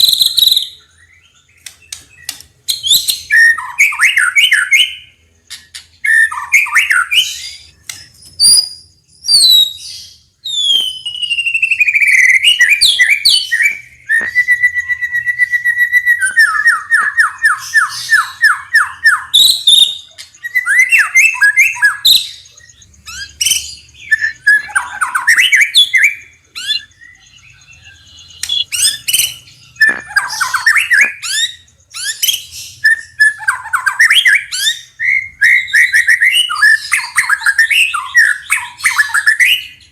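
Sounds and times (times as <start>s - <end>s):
bird singing whistled phrases: 0.0s - 39.9s
harsh rattling bird chatter: 9.5s - 35.0s.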